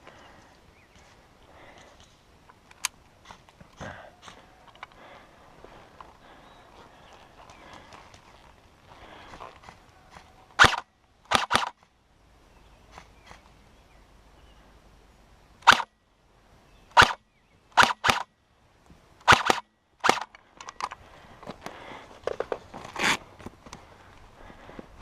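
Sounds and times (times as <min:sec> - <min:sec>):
airsoft rifle shots: 0:10.6 - 0:11.8, 0:15.6 - 0:16.0, 0:16.9 - 0:17.2, 0:17.8 - 0:18.3, 0:19.2 - 0:20.3.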